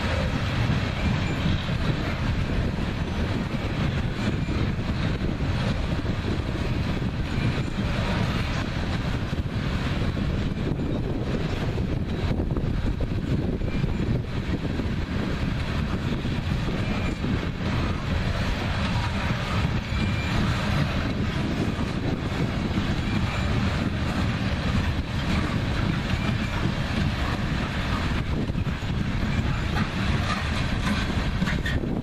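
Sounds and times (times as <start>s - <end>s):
steel wheels rumbling on rail: 0.0s - 32.0s
faint wheel squeals: 16.0s - 18.0s, 18.7s - 24.0s.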